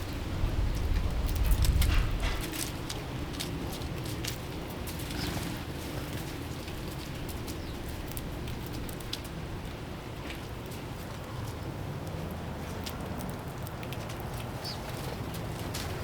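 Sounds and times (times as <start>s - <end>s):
light ticks: 10.2s - 16.0s.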